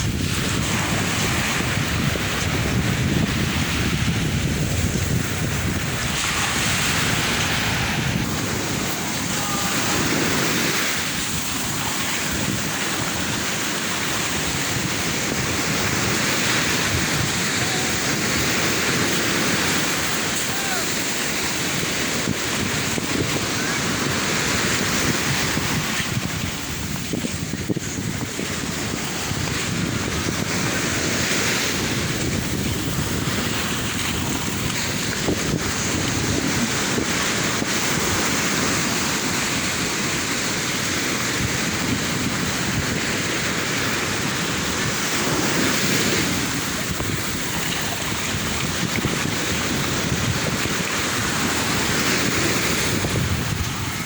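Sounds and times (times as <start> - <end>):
sea waves breaking on shore: 0.0 - 54.0
wind buffeting microphone: 0.0 - 54.0.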